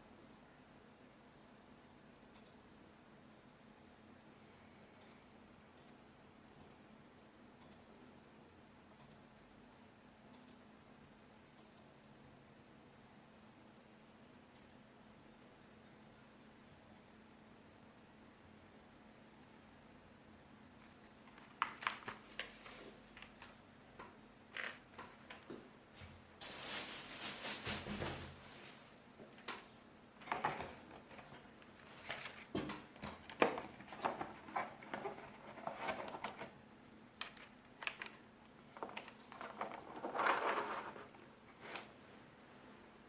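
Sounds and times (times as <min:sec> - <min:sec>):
rustling: 0:26.1 - 0:36.5, 0:37.9 - 0:41.9.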